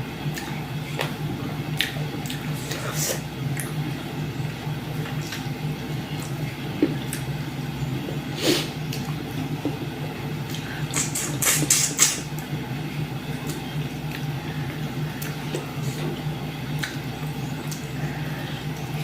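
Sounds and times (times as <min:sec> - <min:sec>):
low hum: 0:00.0 - 0:19.0.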